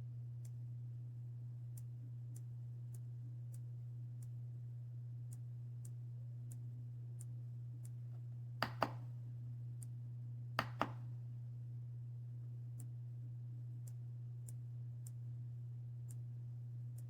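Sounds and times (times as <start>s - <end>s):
steady low hum: 0.0s - 17.0s
faint high ticks: 16.0s - 16.3s.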